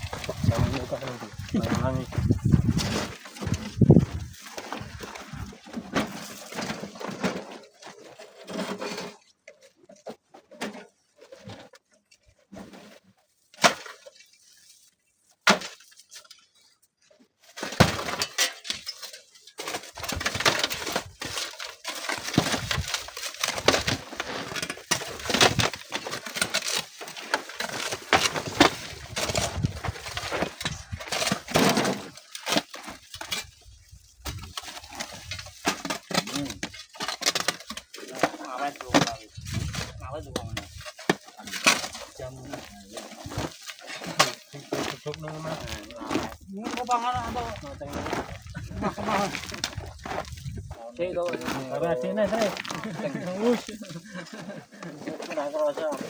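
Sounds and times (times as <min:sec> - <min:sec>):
stones knocking and clattering: 0:00.0 - 0:07.3, 0:19.6 - 0:56.0.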